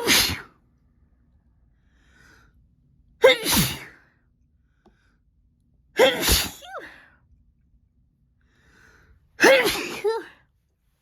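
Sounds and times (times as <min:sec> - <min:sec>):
person sneezing: 0:00.0 - 0:00.6, 0:03.2 - 0:04.0, 0:06.0 - 0:07.0, 0:09.4 - 0:10.4.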